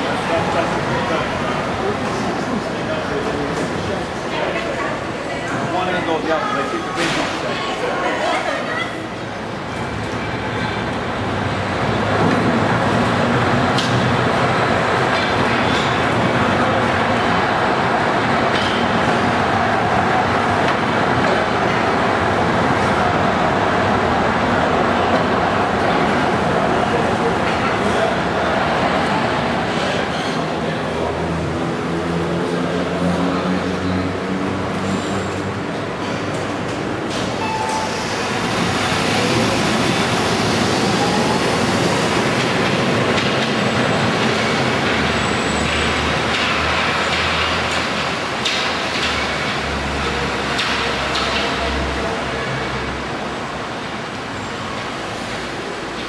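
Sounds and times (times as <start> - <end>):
suspended monorail train rumbling: 0.0 - 56.0.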